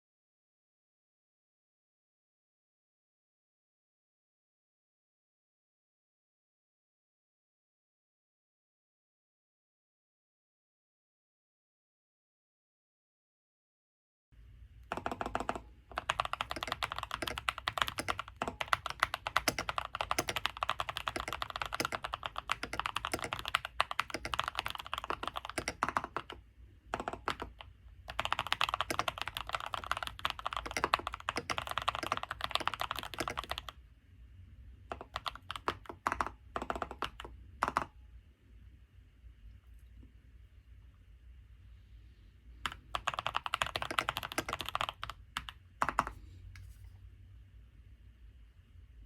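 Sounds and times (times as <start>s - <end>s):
keyboard typing: 14.8s - 33.8s, 34.9s - 37.9s, 42.6s - 46.2s.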